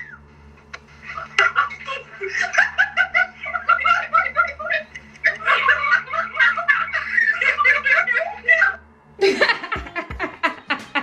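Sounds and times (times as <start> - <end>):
person laughing hard: 9.2 - 11.0.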